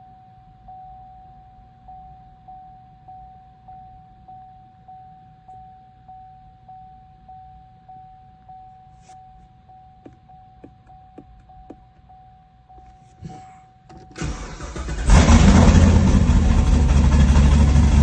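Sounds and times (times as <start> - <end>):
car starter cranking: 13.9 - 18.0
car engine running loudly: 14.2 - 18.0.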